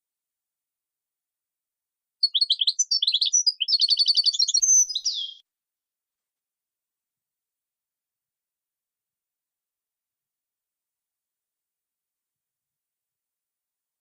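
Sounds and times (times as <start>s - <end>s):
songbird singing: 2.2s - 5.4s.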